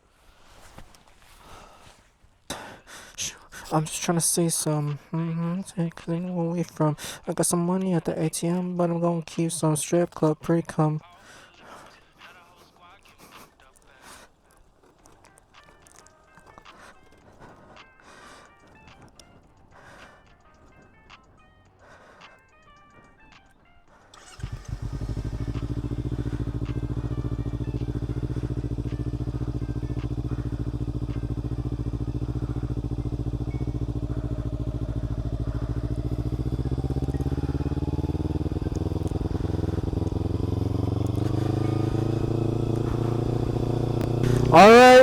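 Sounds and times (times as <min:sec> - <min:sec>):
motorcycle engine starting and idling: 0:24.1 - 0:45.0.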